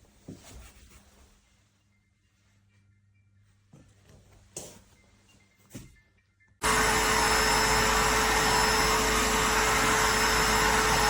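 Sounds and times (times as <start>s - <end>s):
shop vacuum running: 6.6s - 11.0s.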